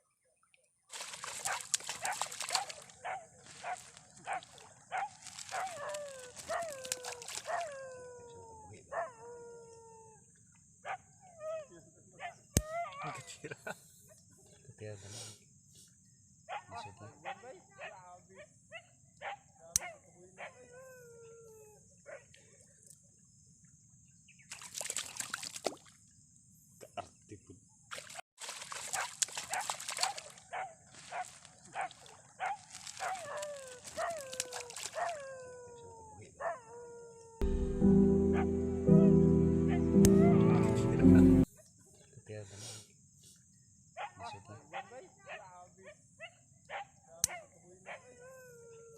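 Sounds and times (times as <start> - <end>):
splashing in shallow water: 0.9 - 8.3, 24.5 - 26.0, 27.9 - 35.9
animal yelping and howling: 5.5 - 10.2, 32.4 - 37.4
high-pitched drone: 37.4 - 41.4.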